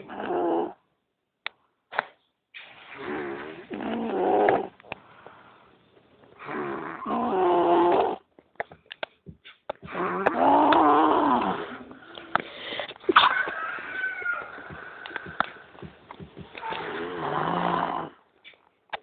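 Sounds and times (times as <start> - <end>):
loud whining snores: 0.0 - 0.8, 2.9 - 4.8, 6.4 - 8.3, 9.9 - 12.3, 16.6 - 18.2.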